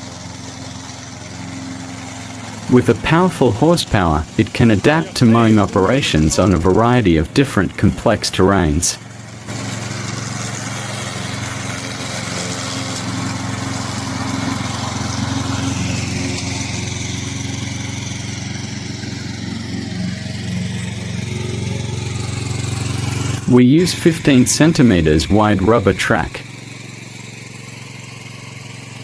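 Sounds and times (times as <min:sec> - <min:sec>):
mower engine running: 0:00.0 - 0:29.0.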